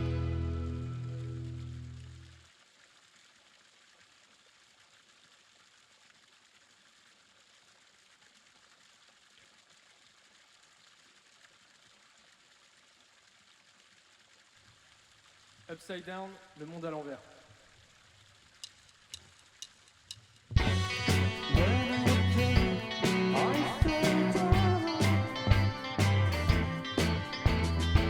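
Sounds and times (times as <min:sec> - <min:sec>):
music: 0:00.0 - 0:02.0, 0:20.6 - 0:28.0.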